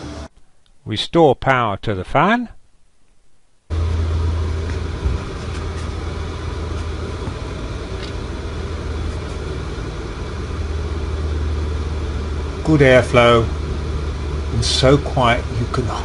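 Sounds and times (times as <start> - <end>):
bath fan running: 3.7 - 16.0.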